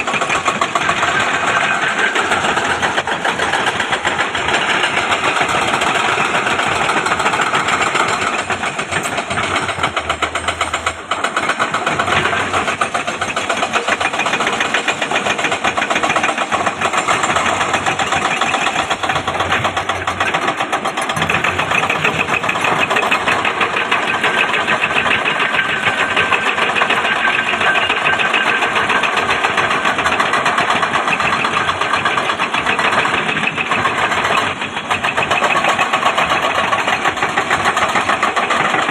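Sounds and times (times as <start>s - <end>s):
excavator diesel engine running: 0.0s - 38.9s
fast even knocking: 3.9s - 15.6s.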